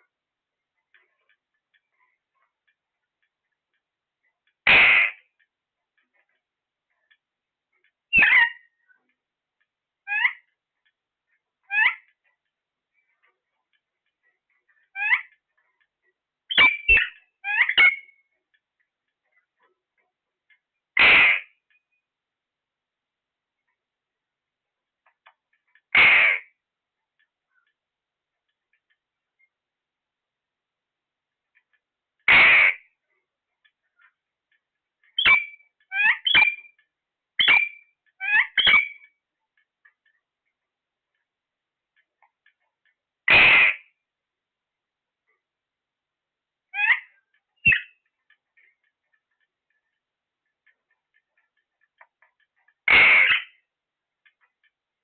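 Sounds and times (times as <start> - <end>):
parrot chirping and screeching: 8.1 - 8.7, 10.1 - 10.5, 11.7 - 12.1, 14.9 - 15.4, 16.5 - 18.1, 21.0 - 21.5, 25.9 - 26.5, 35.2 - 36.7, 37.4 - 39.1, 46.7 - 48.0, 52.9 - 53.6.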